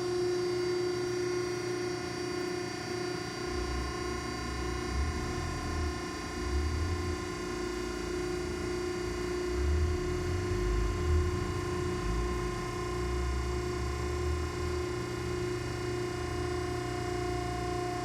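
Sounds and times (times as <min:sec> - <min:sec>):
machine hum and whine: 0:00.0 - 0:18.0
low rumble: 0:03.5 - 0:08.0, 0:09.4 - 0:14.6.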